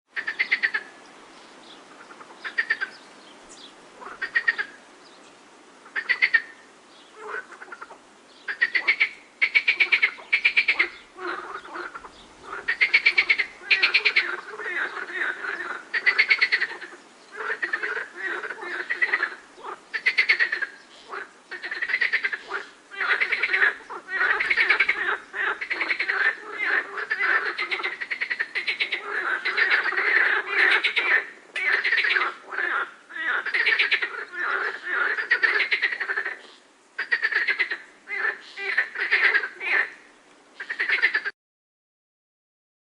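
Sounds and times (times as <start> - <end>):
lower-pitched frog calls: 0.1 - 1.0, 1.9 - 4.8, 5.8 - 41.3
frogs croaking in chorus: 0.1 - 4.9, 5.8 - 41.3.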